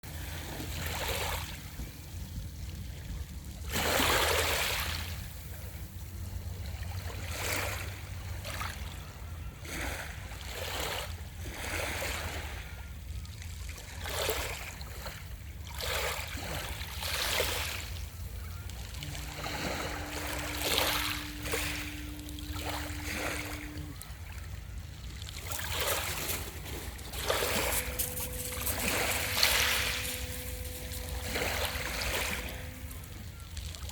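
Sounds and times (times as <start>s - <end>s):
ocean waves lapping at shore: 0.1s - 33.9s
faint steady hum: 12.3s - 33.9s
low steady rumble: 16.5s - 33.9s.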